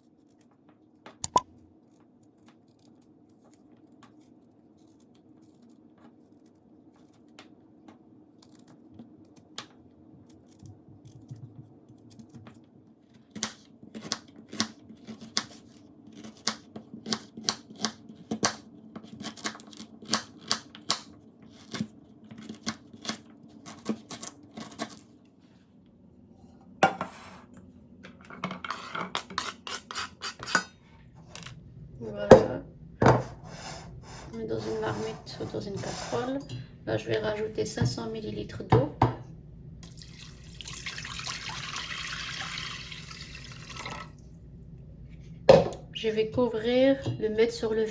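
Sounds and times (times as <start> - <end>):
knife scraping: 28.7 - 30.7, 33.2 - 36.4.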